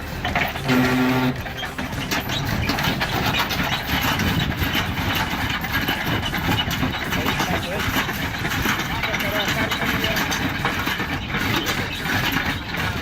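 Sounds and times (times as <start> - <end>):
irregular rattle: 0.0 - 13.0
truck engine running: 0.0 - 13.0.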